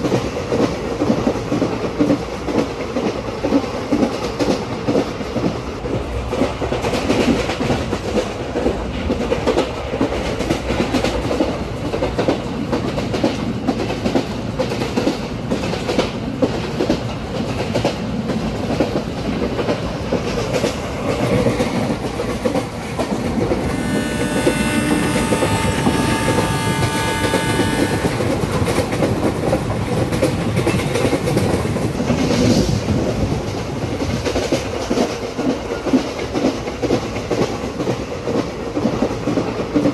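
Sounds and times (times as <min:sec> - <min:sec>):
train wheels rumbling on track: 0:00.0 - 0:39.9
train horn: 0:21.0 - 0:22.0, 0:23.5 - 0:28.8.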